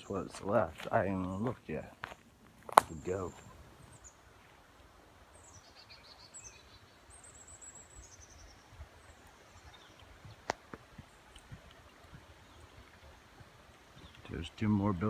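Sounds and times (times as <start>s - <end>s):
songbirds singing: 0.0s - 15.0s
footsteps thumping softly: 2.0s - 3.5s.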